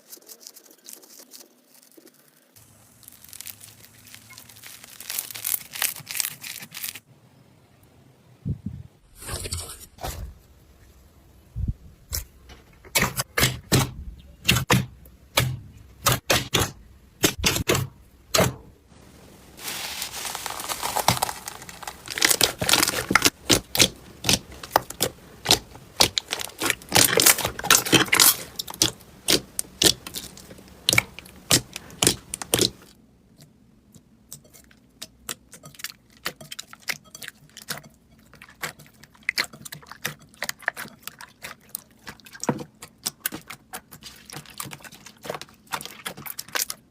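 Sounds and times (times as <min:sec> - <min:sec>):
slime popping and crackling: 0:02.6 - 0:07.0, 0:19.6 - 0:32.9.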